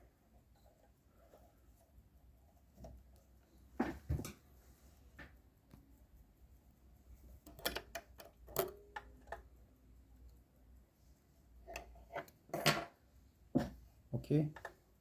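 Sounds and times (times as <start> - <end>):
sewing machine parts clicking: 7.3 - 9.6, 11.2 - 13.0.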